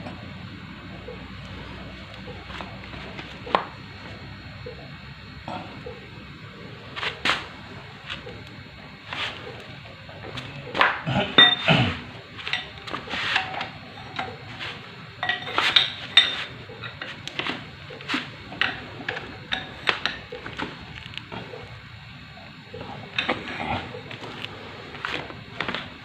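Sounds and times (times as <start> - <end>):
metal tools clinking: 15.2 - 17.1.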